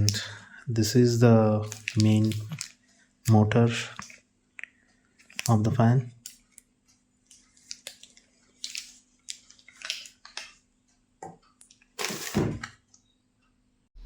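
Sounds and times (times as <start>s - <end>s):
packaging rustling: 1.6s - 2.8s.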